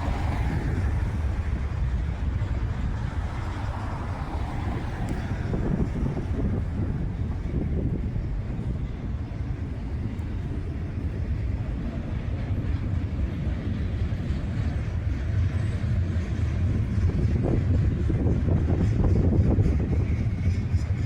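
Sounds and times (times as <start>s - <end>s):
train rumbling on tracks: 0.0s - 21.0s
wind on microphone: 0.0s - 21.0s.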